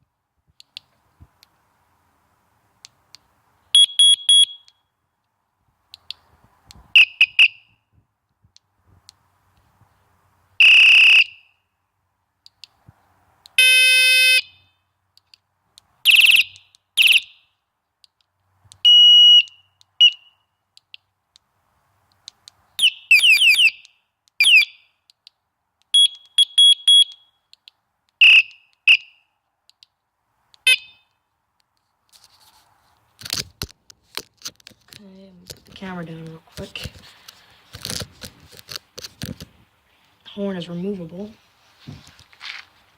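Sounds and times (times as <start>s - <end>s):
electronic bike horn: 13.6s - 14.5s.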